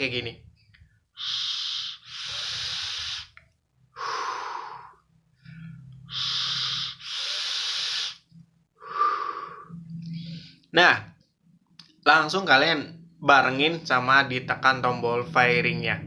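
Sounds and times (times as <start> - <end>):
man breathing hard through mouth: 1.2 - 10.6.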